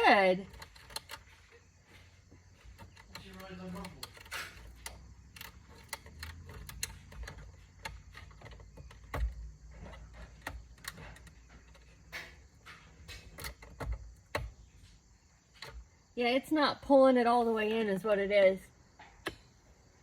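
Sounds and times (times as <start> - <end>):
clicks of tools and plastic parts: 2.6 - 14.6, 19.0 - 19.6.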